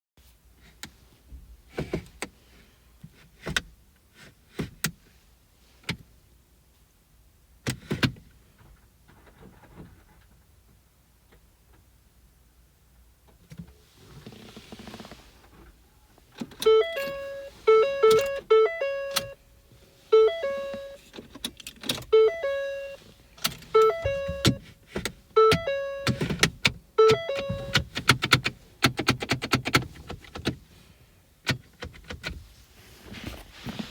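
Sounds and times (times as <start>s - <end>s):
car control clicks: 16.4s - 19.4s, 23.4s - 30.6s
dashboard warning chime: 16.6s - 21.1s, 22.0s - 28.0s.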